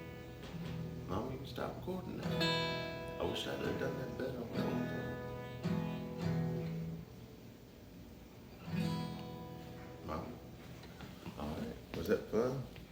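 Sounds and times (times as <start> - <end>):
acoustic guitar strumming: 0.0 - 7.4, 8.5 - 10.8.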